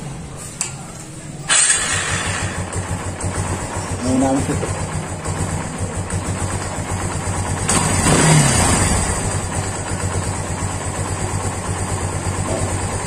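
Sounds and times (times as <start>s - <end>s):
motorcycle engine idling: 0.0s - 13.0s
engine revving: 1.5s - 11.6s.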